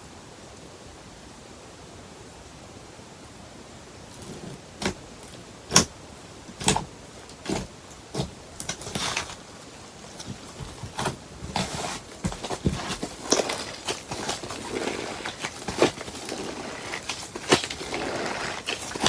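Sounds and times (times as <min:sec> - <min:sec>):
slime squelching: 0:04.1 - 0:19.0.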